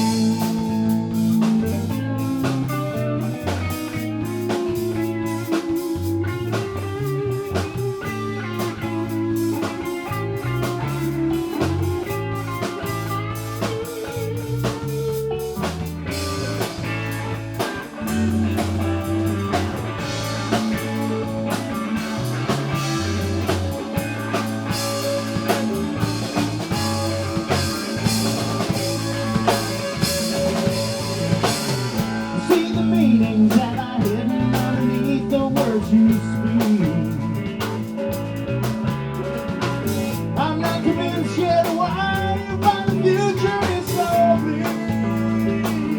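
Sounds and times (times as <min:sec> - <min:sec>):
drum kit: 0:00.0 - 0:45.9
electric guitar: 0:00.0 - 0:45.9
stepping bass line: 0:00.0 - 0:45.9.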